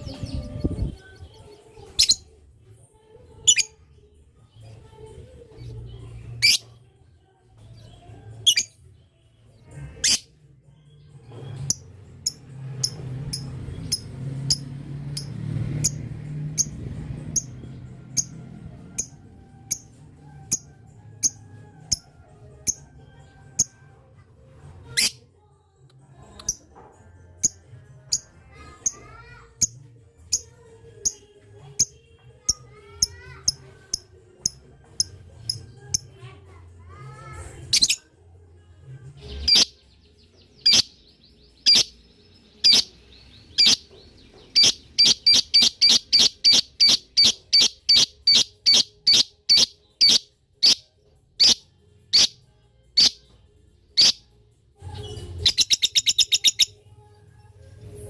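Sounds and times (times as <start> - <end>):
bird chirping high: 6.4 - 6.7, 8.4 - 8.8, 39.3 - 39.8, 40.5 - 50.8, 51.4 - 52.4, 53.0 - 53.2, 54.0 - 54.2, 54.9 - 56.8.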